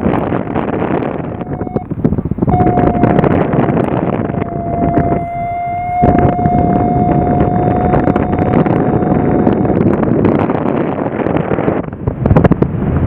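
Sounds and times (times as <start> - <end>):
wind buffeting microphone: 0.0 - 13.0
steady single tone: 1.3 - 10.2.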